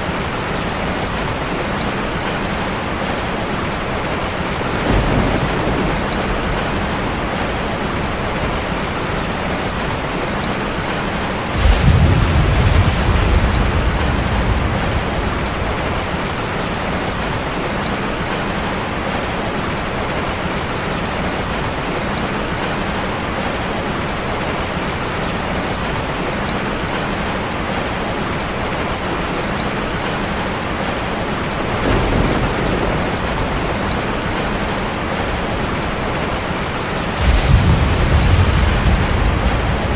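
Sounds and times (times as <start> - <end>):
heavy rain: 0.0 - 39.9
thunder rolling: 4.4 - 10.2, 10.8 - 17.3, 31.8 - 39.9.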